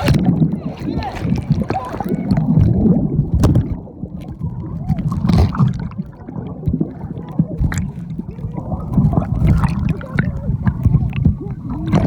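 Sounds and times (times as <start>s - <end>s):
water sloshing and gurgling: 0.0s - 12.0s.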